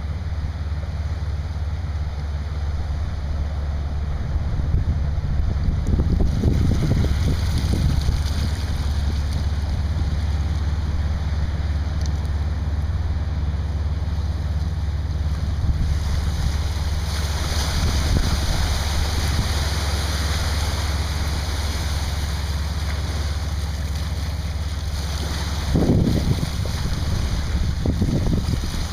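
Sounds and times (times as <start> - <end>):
cargo ship rumble: 0.0 - 28.9
hiss of wind and water: 0.0 - 28.9
wind buffeting microphone: 4.0 - 11.9, 12.6 - 22.8, 24.1 - 28.9.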